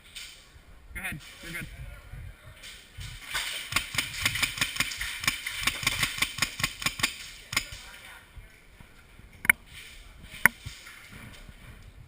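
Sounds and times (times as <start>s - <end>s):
airsoft gun shots: 3.6s - 7.8s.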